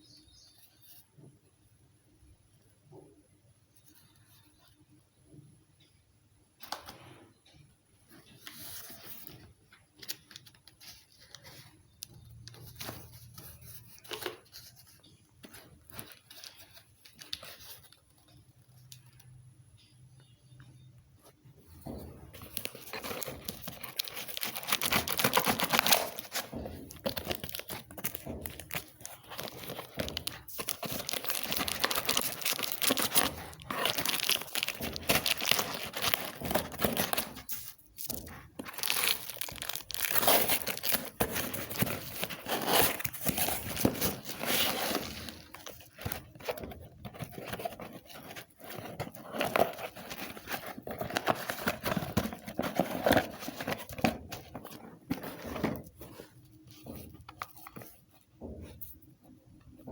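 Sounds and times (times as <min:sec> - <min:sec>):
packaging crinkling and tearing: 0:22.4 - 0:55.9.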